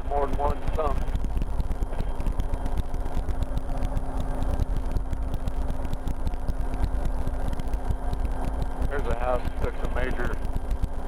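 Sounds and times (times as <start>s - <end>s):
helicopter engine and rotor: 0.0s - 11.0s.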